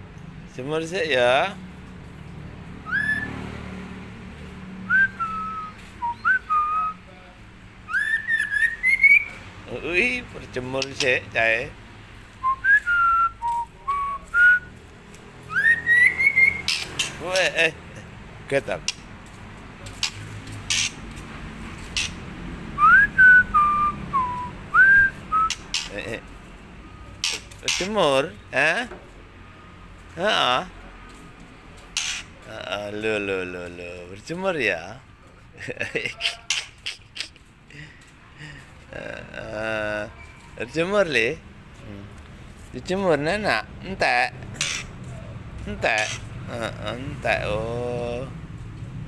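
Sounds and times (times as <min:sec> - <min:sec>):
bird whistling: 0:02.8 - 0:03.4, 0:04.9 - 0:07.0, 0:07.8 - 0:09.4, 0:12.4 - 0:14.7, 0:15.5 - 0:17.2, 0:22.8 - 0:25.9.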